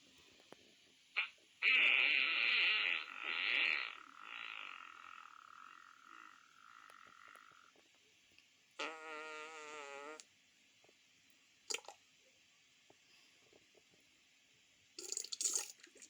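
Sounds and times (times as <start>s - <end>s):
raspy sputtering fart: 1.2s - 7.8s, 8.8s - 10.3s.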